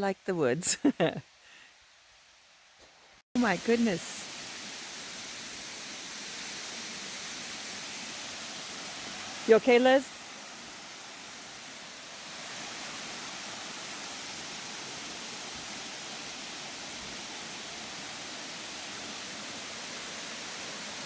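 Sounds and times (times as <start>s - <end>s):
waterfall rushing: 3.4s - 21.0s.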